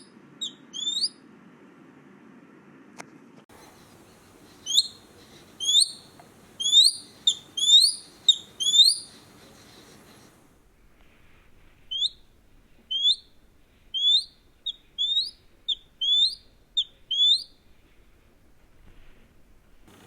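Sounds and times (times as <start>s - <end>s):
eagle whistled cries: 0.4s - 1.2s, 3.6s - 10.3s, 12.9s - 13.3s, 14.0s - 17.6s.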